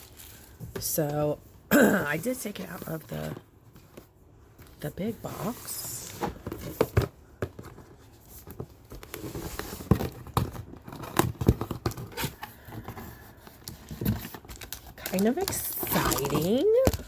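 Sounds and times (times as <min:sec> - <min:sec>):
cardboard and packaging tearing: 0:13.6 - 0:17.0.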